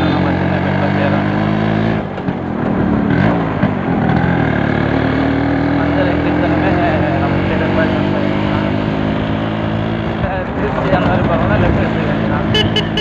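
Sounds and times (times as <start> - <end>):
two-stroke engine running: 12.1 - 13.0.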